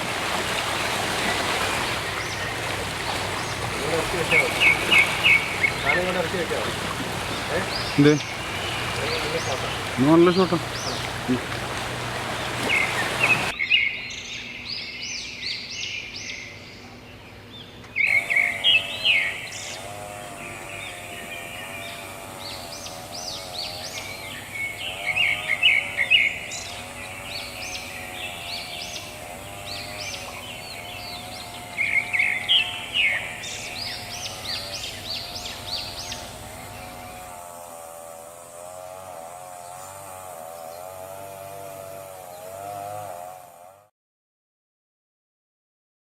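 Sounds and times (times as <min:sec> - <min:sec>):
birds chirping: 0:00.0 - 0:13.8, 0:18.0 - 0:37.4.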